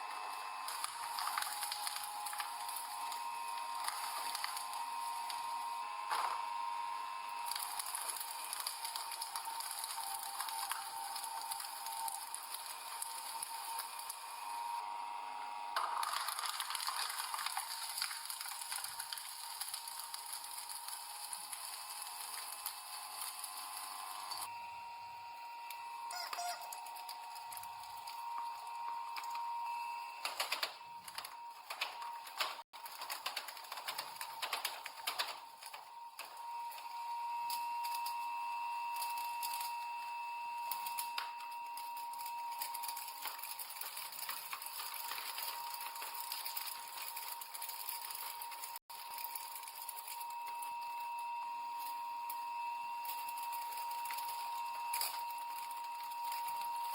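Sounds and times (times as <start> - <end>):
crushing machine whine: 0.0 - 56.9
objects clicking and crackling: 0.7 - 6.4, 7.4 - 14.3, 15.8 - 24.5, 30.2 - 38.2, 40.6 - 51.1, 53.0 - 56.9.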